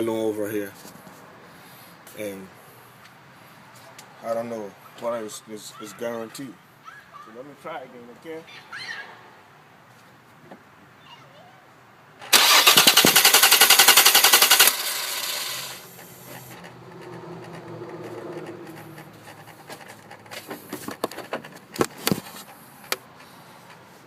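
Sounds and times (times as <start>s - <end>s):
car starter rapid clicking: 12.2s - 15.9s.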